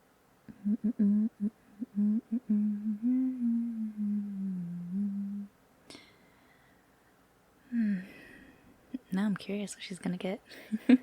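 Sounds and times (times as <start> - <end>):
woman humming: 0.5 - 5.6, 7.7 - 8.2.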